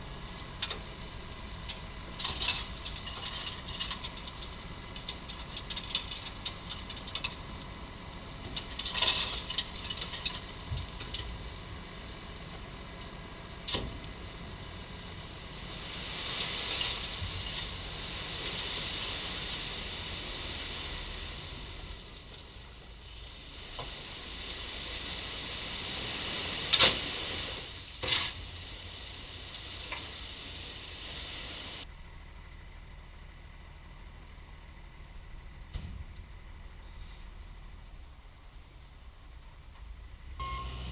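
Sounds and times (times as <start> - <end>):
gravel hissing: 0.0 - 32.6
diesel engine rumbling: 0.0 - 40.9
loader rattling: 0.2 - 11.4.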